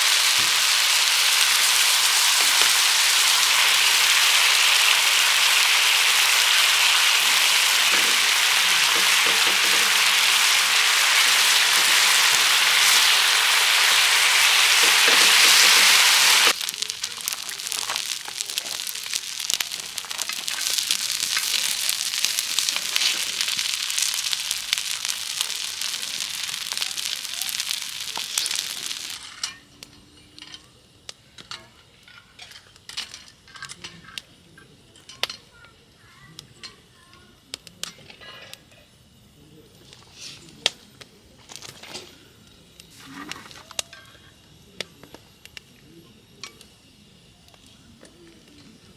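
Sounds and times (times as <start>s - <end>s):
scattered pops and crackles: 0.0s - 29.4s
food sizzling in a frying pan: 0.0s - 34.2s.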